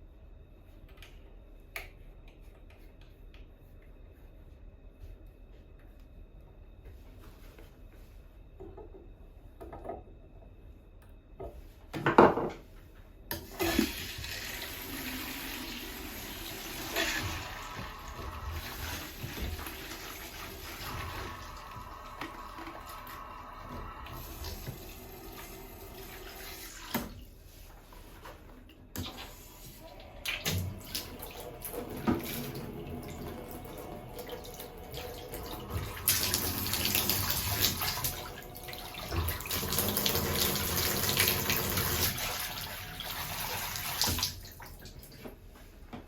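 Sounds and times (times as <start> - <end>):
water running from faucet: 13.6 - 27.0, 29.1 - 45.0.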